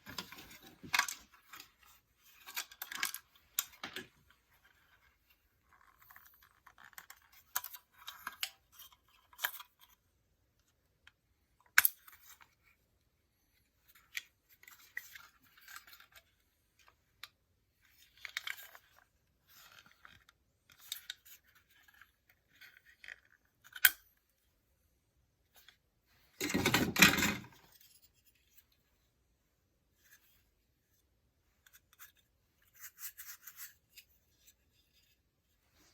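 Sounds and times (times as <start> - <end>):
small parts clicking and rattling: 0.0 - 10.0, 13.8 - 24.2, 26.4 - 28.7.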